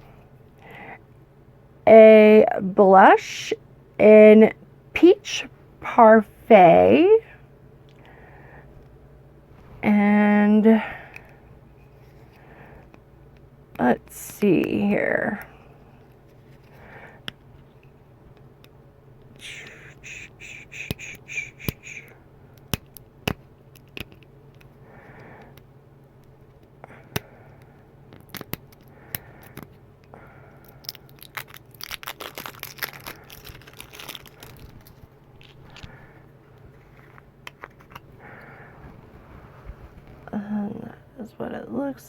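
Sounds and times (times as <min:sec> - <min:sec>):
packaging crinkling and rustling: 0:30.6 - 0:38.1
packaging squeaks: 0:30.8 - 0:36.0.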